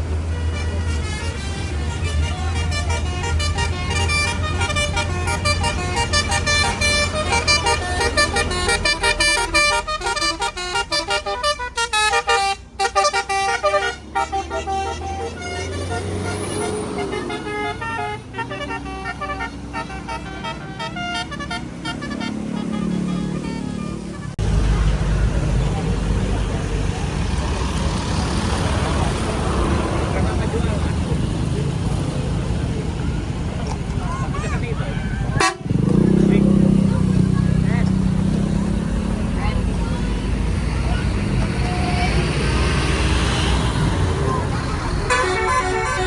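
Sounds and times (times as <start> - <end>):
musical bus horn tune: 0.0 - 24.4, 34.9 - 36.2, 44.8 - 46.0
bus engine rumble: 0.0 - 46.0.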